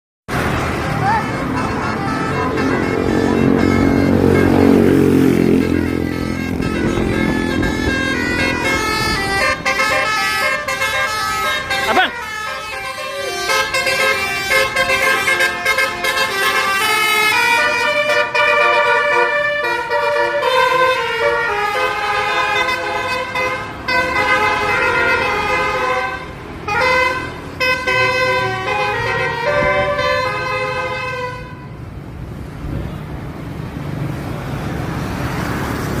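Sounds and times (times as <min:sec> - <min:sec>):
bus engine: 0:00.3 - 0:36.0
multi-tone air horn playing tune: 0:01.1 - 0:31.8.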